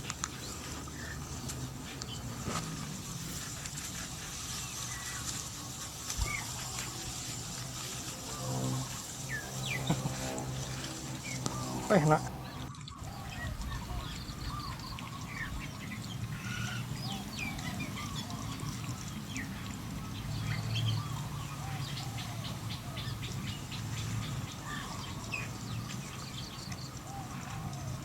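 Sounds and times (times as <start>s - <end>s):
steady low rumble: 0.0s - 20.4s
bird chirps and calls: 8.4s - 22.1s.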